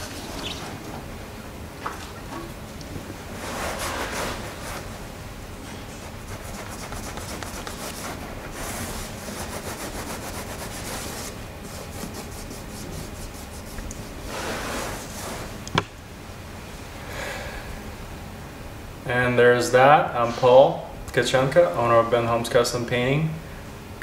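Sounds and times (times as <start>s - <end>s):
rag scrubbing rubber: 3.3s - 5.0s, 6.0s - 15.7s.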